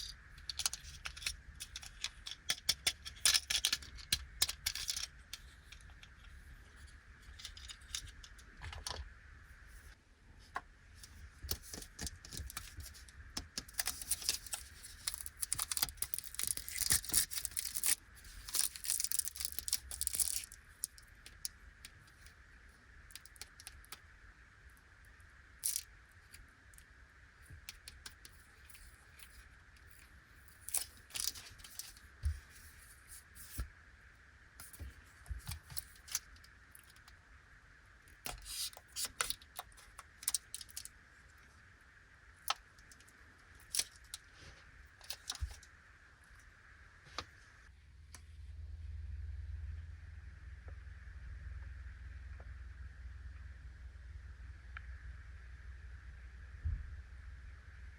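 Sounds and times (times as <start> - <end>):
small pieces clicking and tapping: 0.0 - 6.3, 11.5 - 22.4, 38.2 - 40.9
plastic packet tearing and crinkling: 13.7 - 21.0.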